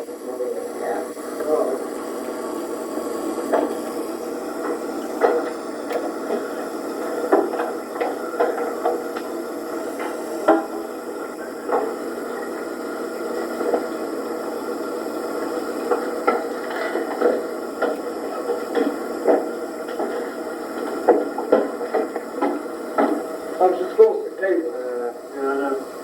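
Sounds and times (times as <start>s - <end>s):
steady background hum: 0.0s - 26.0s
knocks clicks and rattling: 4.6s - 10.9s.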